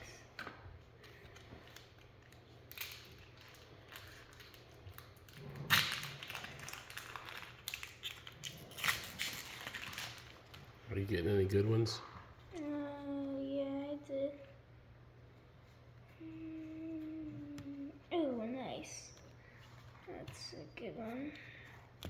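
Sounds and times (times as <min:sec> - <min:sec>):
foil wrapper crinkling and tearing: 0:01.3 - 0:10.6.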